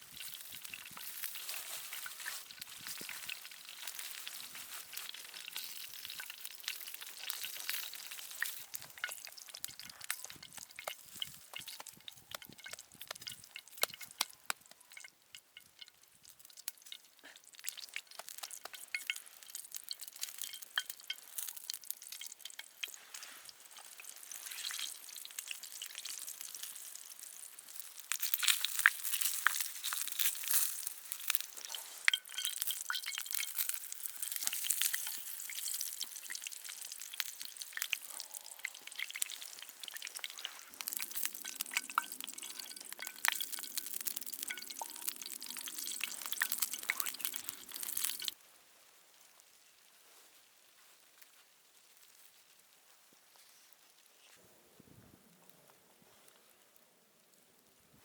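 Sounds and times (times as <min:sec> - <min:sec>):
food sizzling in a pan: 0:00.0 - 0:48.4.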